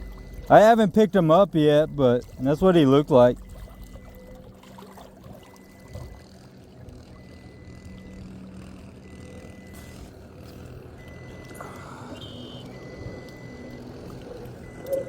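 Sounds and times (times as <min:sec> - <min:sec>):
boat motor humming: 0:00.0 - 0:15.0
faint high beep: 0:11.0 - 0:13.7.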